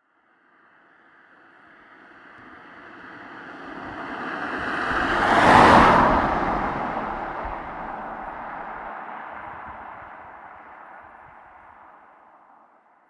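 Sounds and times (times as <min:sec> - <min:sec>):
car passing by: 0:01.8 - 0:11.4.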